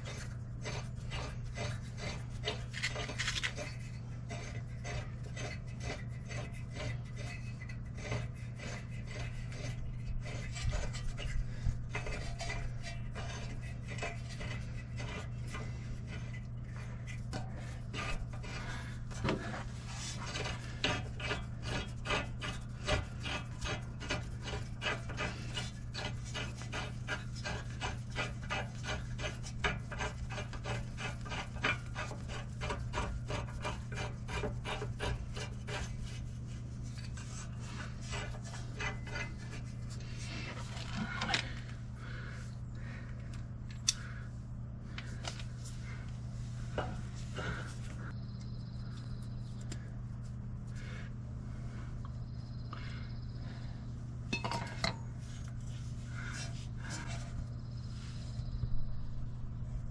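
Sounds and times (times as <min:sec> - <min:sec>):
hand tool rasping strokes: 0:00.0 - 0:42.5, 0:53.4 - 0:58.5
steady low hum: 0:00.0 - 0:59.9.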